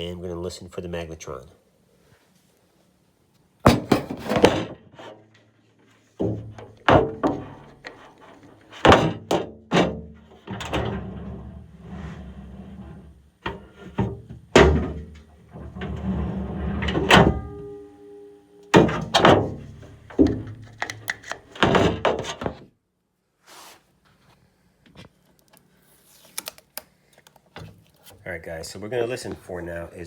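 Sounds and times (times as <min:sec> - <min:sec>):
knocks and thunks of microwave drawer: 0:03.7 - 0:04.8, 0:06.2 - 0:07.8, 0:08.8 - 0:11.0, 0:13.9 - 0:15.2, 0:18.8 - 0:20.6, 0:21.6 - 0:22.6.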